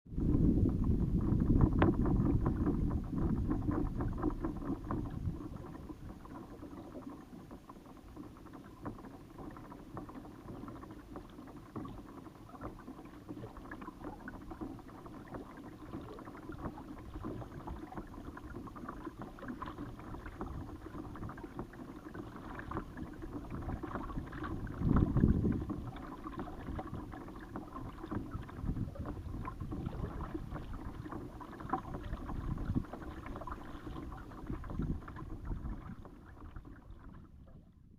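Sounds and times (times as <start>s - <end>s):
water lapping against kayak hull: 0.0s - 37.9s
wind buffeting microphone: 0.1s - 6.2s, 23.4s - 27.2s, 27.9s - 37.9s.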